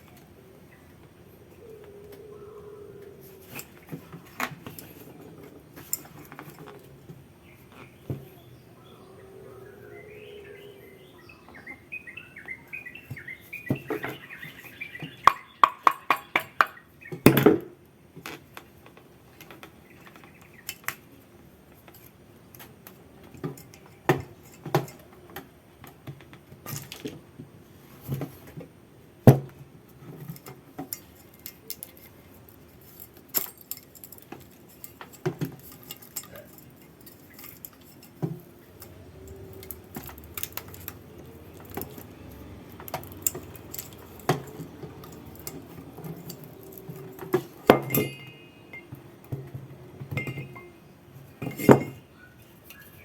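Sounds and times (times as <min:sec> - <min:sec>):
metal tools clinking: 0:03.3 - 0:08.2, 0:21.7 - 0:25.3, 0:30.0 - 0:53.0.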